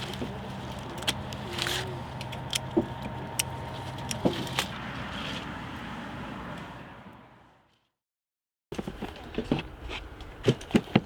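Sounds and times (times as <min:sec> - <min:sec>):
low engine hum: 0:00.0 - 0:07.7.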